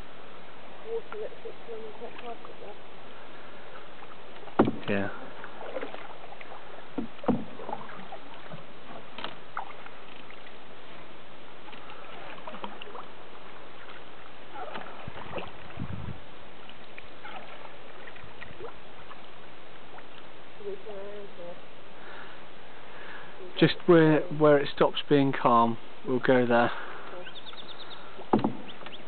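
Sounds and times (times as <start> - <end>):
paddle strokes through water: 0.0 - 24.3, 26.0 - 29.0
sharp knock: 4.6 - 4.9.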